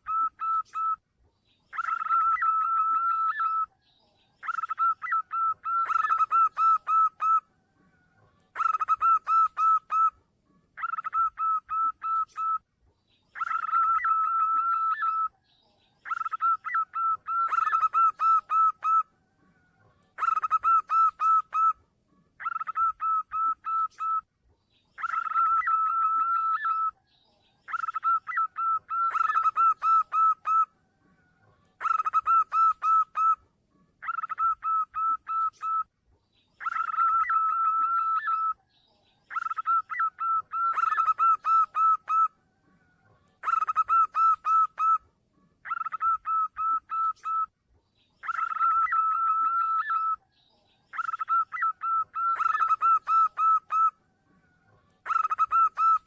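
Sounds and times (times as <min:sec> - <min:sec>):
dove cooing: 0:00.0 - 0:01.0, 0:01.7 - 0:03.7, 0:04.4 - 0:10.2, 0:10.8 - 0:12.6, 0:13.4 - 0:15.3, 0:16.0 - 0:21.8, 0:22.4 - 0:24.2, 0:25.0 - 0:27.0, 0:27.7 - 0:33.4, 0:34.0 - 0:35.9, 0:36.6 - 0:38.6, 0:39.3 - 0:45.0, 0:45.6 - 0:47.5, 0:48.2 - 0:50.2, 0:50.9 - 0:56.0.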